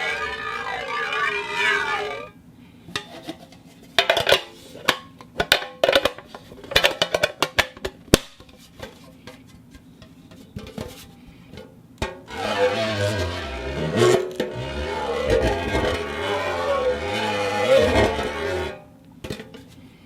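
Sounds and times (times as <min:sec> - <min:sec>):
metal scraping: 0:00.0 - 0:02.4, 0:12.2 - 0:18.9
metal-on-metal squeal: 0:00.0 - 0:02.4, 0:12.3 - 0:18.9.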